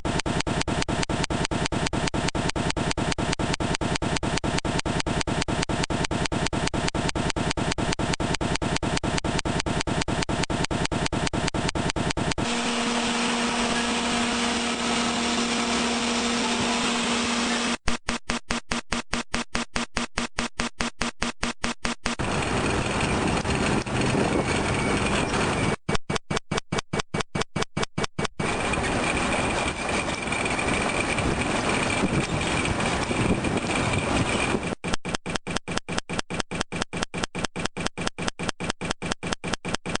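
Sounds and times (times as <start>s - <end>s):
low motor hum: 6.8s - 17.8s, 22.1s - 25.8s, 28.4s - 34.8s
machinery rushing noise: 12.3s - 17.8s, 22.2s - 25.8s, 28.4s - 34.8s.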